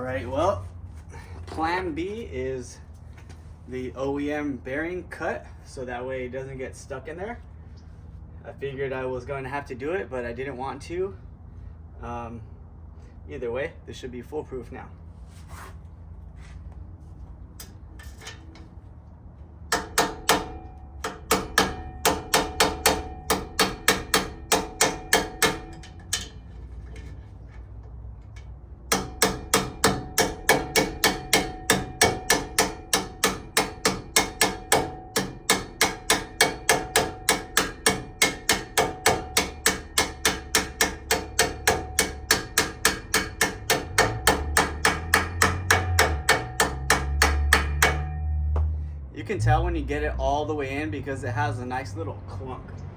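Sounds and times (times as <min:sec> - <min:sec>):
hammer blows ringing on metal: 0:19.7 - 0:26.4, 0:28.9 - 0:48.7.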